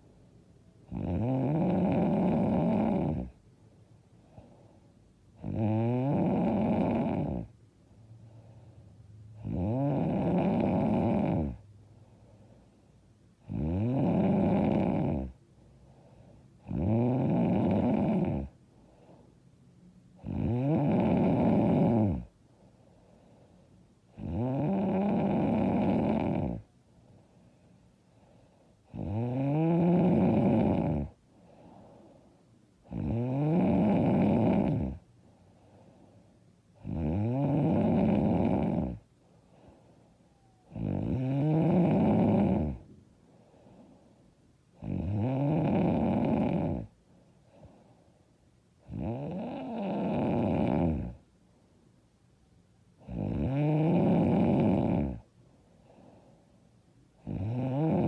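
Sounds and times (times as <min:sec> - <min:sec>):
woman snoring loudly: 0:00.9 - 0:03.4, 0:05.4 - 0:07.5, 0:09.4 - 0:11.6, 0:13.4 - 0:15.4, 0:16.6 - 0:18.5, 0:20.2 - 0:22.3, 0:24.2 - 0:26.7, 0:28.9 - 0:31.2, 0:32.9 - 0:35.0, 0:36.8 - 0:39.0, 0:40.7 - 0:42.8, 0:44.8 - 0:46.9, 0:48.9 - 0:51.2, 0:53.0 - 0:55.2, 0:57.2 - 0:58.0.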